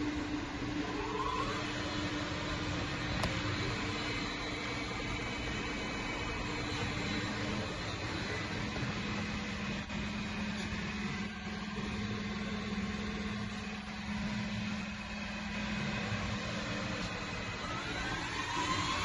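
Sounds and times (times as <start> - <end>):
machine noise: 0.0 - 19.0
machine spindle humming: 0.0 - 19.0
spindle rising whine: 0.0 - 19.0.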